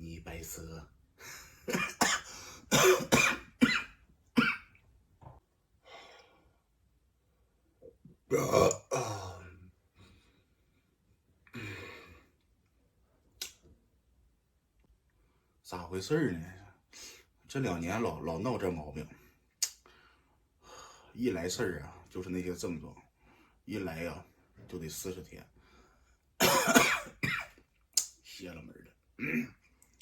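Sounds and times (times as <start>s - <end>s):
man coughing: 1.6s - 4.7s, 8.3s - 9.5s, 26.4s - 27.6s, 29.2s - 29.6s.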